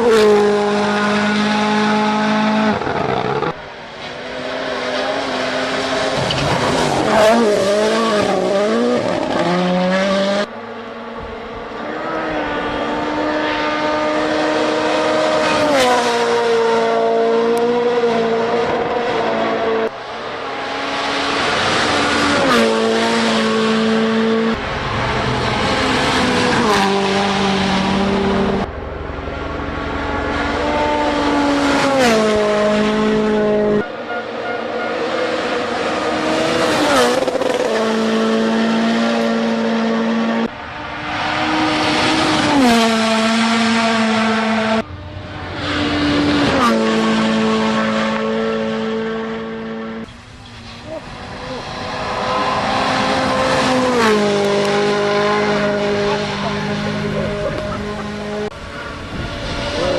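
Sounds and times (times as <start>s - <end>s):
rally car engines revving: 0.0s - 59.9s.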